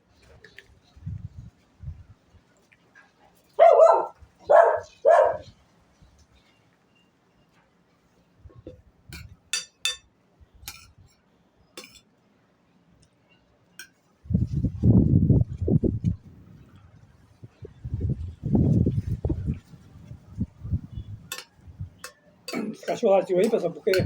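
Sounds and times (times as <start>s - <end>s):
dog barking: 3.6s - 5.5s.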